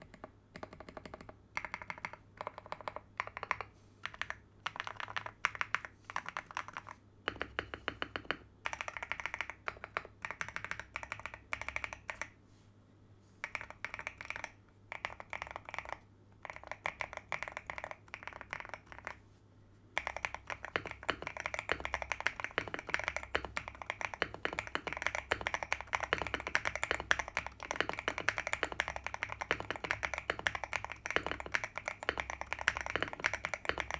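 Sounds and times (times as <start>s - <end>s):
typing on mechanical keyboard: 0.0s - 12.4s, 13.4s - 19.2s, 20.0s - 33.9s.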